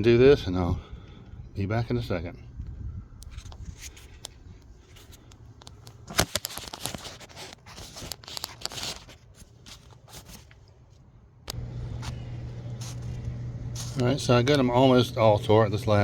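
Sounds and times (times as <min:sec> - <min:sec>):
scraping and rustling: 0:03.3 - 0:11.0, 0:11.9 - 0:14.6.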